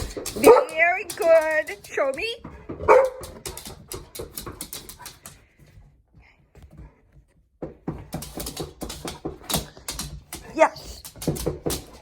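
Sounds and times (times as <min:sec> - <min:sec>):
light taps and clicks: 0:00.0 - 0:05.8.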